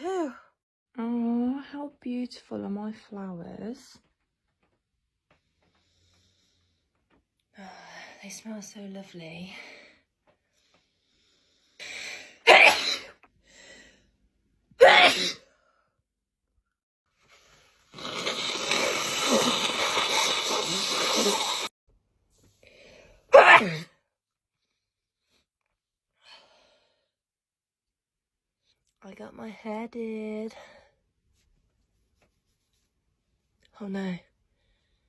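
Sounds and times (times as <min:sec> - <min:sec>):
woman sneezing: 0:12.4 - 0:13.2, 0:14.8 - 0:15.4, 0:18.2 - 0:21.7, 0:23.3 - 0:23.9.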